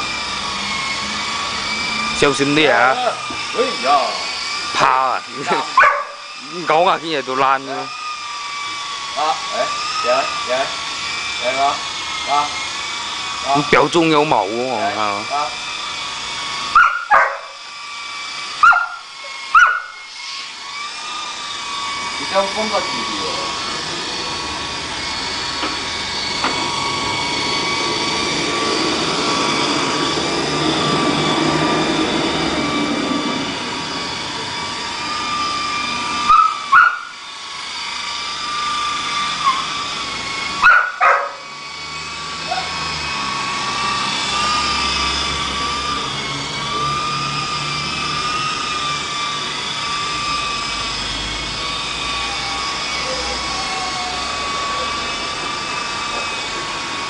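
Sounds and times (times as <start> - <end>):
radio-controlled helicopter whine: 0.0 - 57.0.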